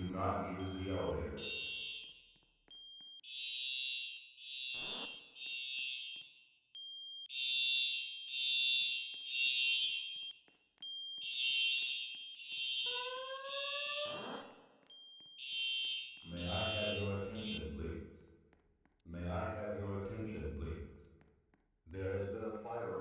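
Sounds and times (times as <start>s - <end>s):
fire alarm horn blasts: 0.0s - 17.8s.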